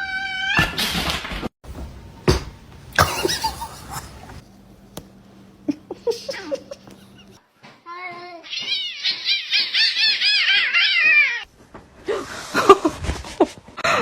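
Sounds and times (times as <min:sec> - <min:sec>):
rustling and knocks: 0:01.7 - 0:04.4.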